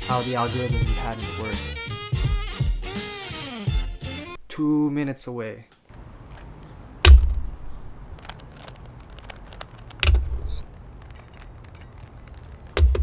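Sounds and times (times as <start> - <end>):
sharp knocks with low thud: 7.1 - 7.5.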